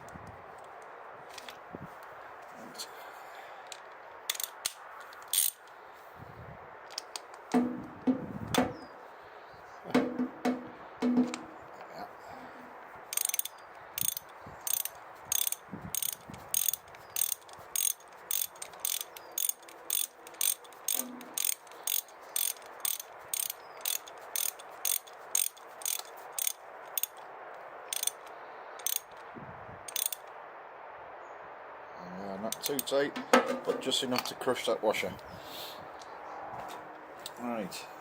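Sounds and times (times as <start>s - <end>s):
ratchet wrench clicking: 3.7s - 5.7s, 13.1s - 27.2s, 27.9s - 29.2s, 29.9s - 30.3s.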